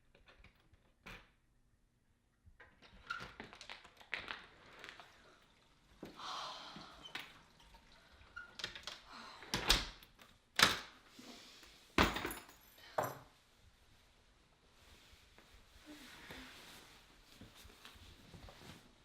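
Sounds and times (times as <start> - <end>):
objects knocking and clattering: 12.0 - 13.3.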